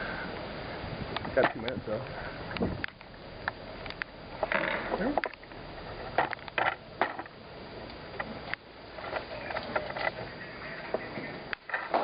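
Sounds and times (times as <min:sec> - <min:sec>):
sharp clicks and light knocks: 0:01.2 - 0:01.8, 0:02.5 - 0:05.6.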